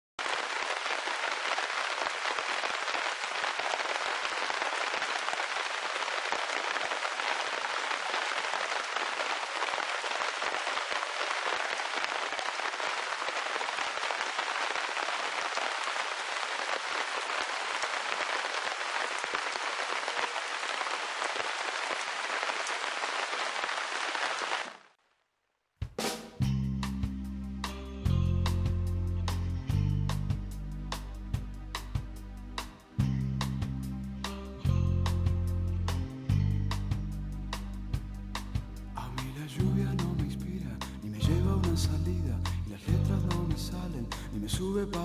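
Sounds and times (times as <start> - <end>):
rain falling steadily: 0.2 - 24.9.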